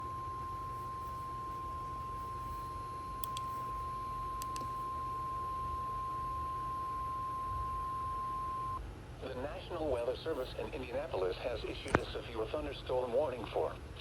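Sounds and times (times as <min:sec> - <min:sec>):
steady pure alarm tone: 0:00.0 - 0:08.8.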